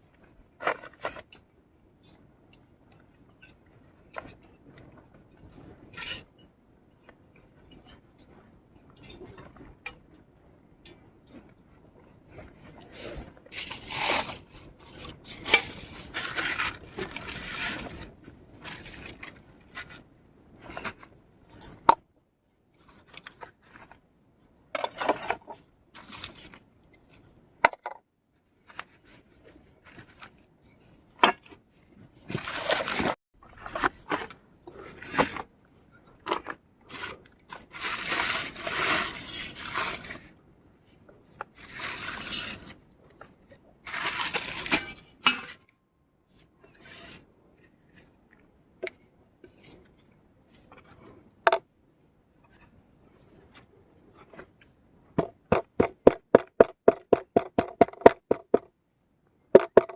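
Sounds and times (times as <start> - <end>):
scrapes and rustles: 0.0 - 10.2, 10.9 - 22.0, 22.7 - 24.1, 24.8 - 27.4, 28.4 - 51.4, 52.3 - 54.8.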